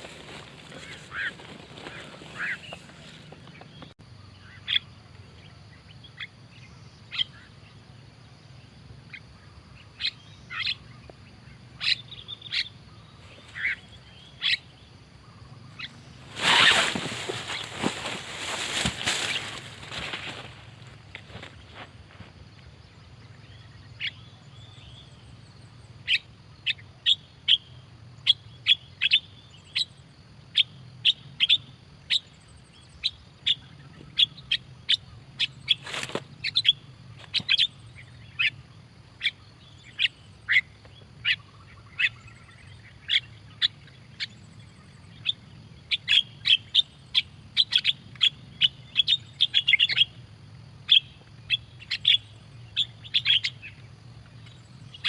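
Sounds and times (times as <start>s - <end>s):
starlings chirping: 0.0s - 7.9s, 8.6s - 55.0s.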